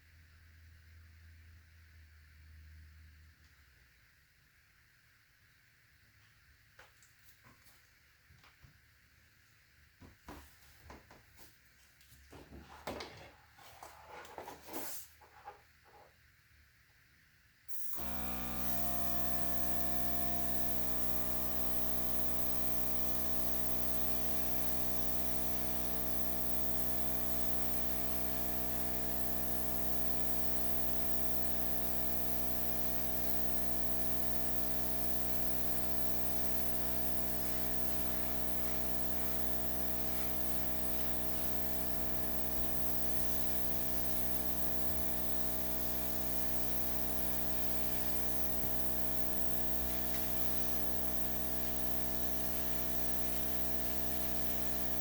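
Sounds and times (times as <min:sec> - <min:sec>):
electric blower motor hum: 0:17.7 - 0:55.0.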